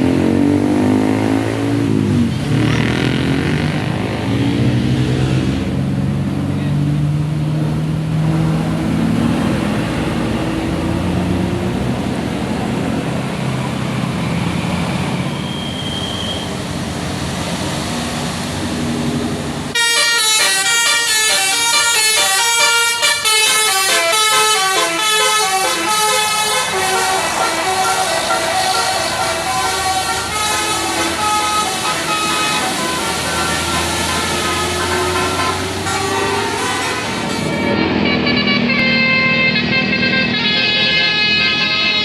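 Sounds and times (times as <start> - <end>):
bus engine and road noise: 0.0 - 42.0
musical air horn melody: 19.7 - 42.0.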